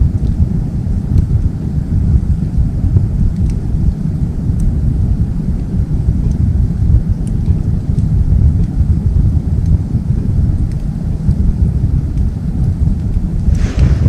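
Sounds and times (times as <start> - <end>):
stove low rumble: 0.0 - 14.0
wood fire crackling and popping: 12.9 - 14.0.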